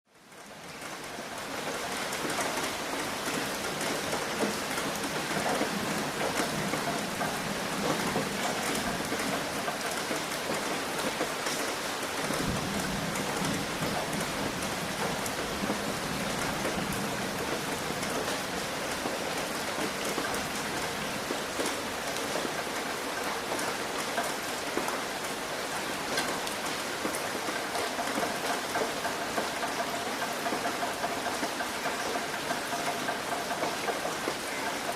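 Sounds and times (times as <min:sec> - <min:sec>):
rain on a roof: 0:00.1 - 0:34.9.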